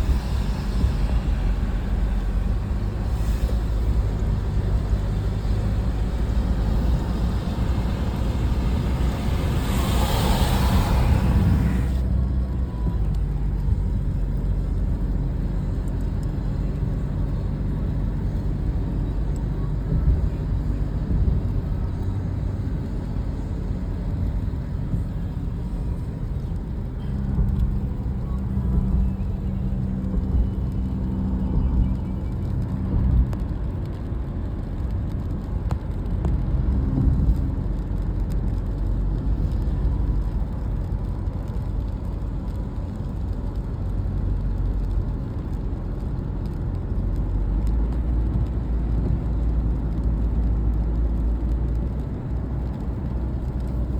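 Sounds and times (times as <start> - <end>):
vehicle engine and road rumble: 0.0 - 53.9.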